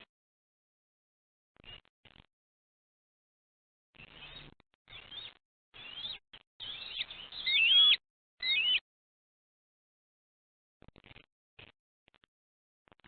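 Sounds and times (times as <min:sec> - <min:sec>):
eagle calling: 0:06.6 - 0:08.8.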